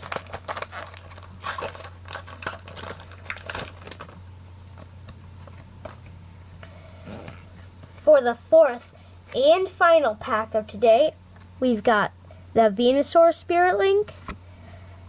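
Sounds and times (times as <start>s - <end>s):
foil wrapper crinkling: 0.0s - 6.0s
low steady hum: 0.0s - 15.0s.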